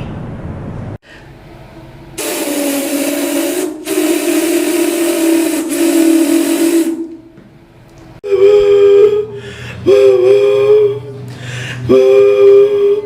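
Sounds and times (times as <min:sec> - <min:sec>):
man imitating steam whistle: 0:02.2 - 0:07.3, 0:08.2 - 0:13.0.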